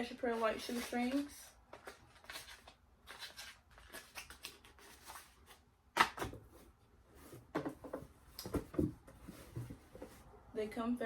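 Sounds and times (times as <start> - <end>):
packaging rustling and crinkling: 0.1 - 5.6.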